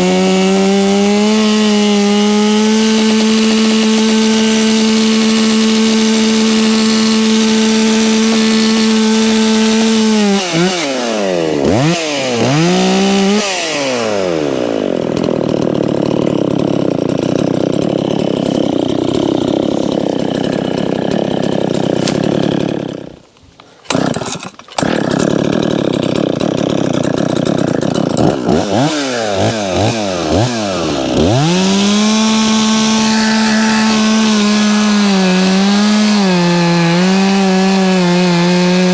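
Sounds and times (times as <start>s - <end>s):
chainsaw revving: 0.0s - 23.2s, 23.9s - 38.9s
chainsaw cutting wood: 0.0s - 38.9s.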